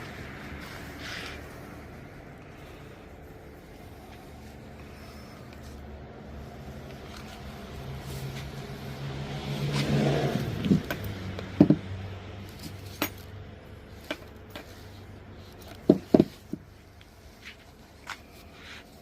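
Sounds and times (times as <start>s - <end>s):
car passing by: 0.0s - 13.8s.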